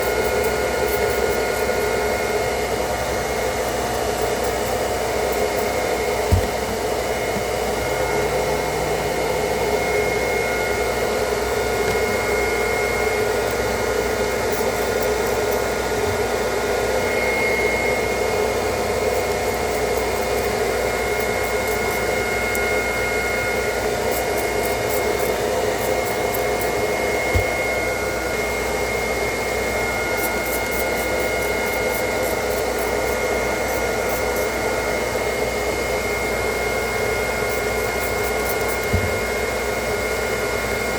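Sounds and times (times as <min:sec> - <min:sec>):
faint high whistle: 0:17.0 - 0:18.4.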